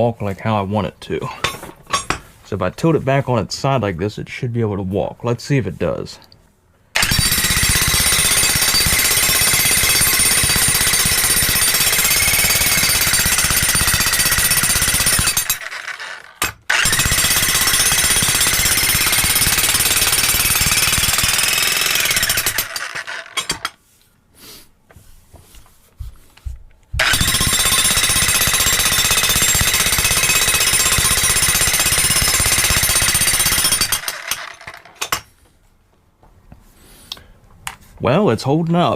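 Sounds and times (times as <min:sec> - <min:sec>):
electric jackhammer hammering: 0:07.0 - 0:23.8, 0:27.0 - 0:35.3.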